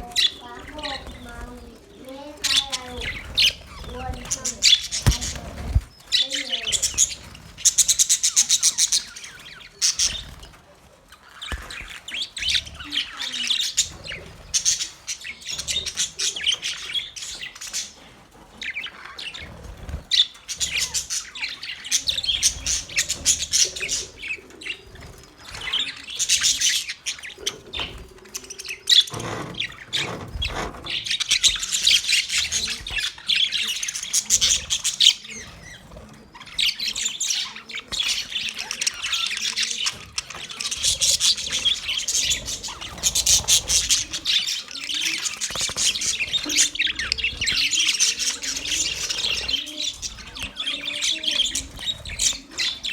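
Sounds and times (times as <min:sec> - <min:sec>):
budgerigars chirping and warbling: 0:00.0 - 0:52.9.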